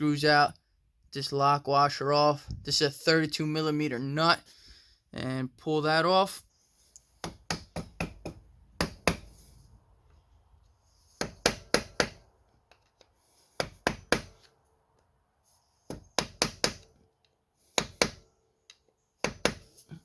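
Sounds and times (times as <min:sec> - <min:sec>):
hammer tapping on metal: 0:07.2 - 0:09.3.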